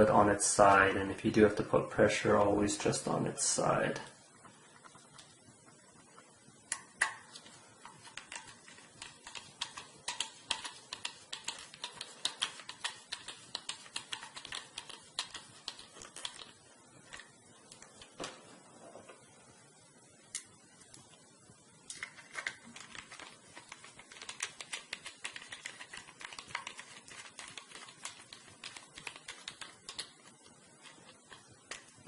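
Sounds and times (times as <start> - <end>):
computer parts clicking and tapping: 7.9 - 16.5, 22.0 - 30.2.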